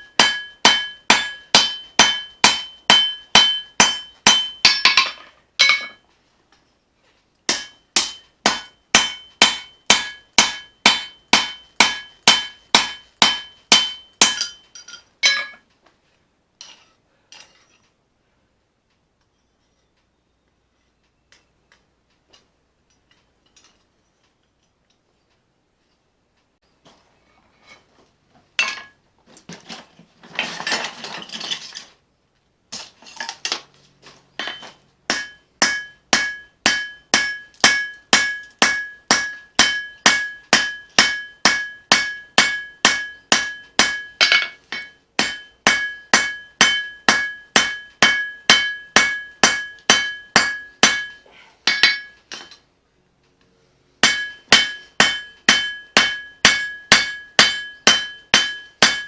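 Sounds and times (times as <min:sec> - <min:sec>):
hammer striking steel on anvil: 0:00.0 - 0:06.0, 0:07.5 - 0:15.6, 0:34.4 - 0:52.6, 0:54.0 - 0:59.0.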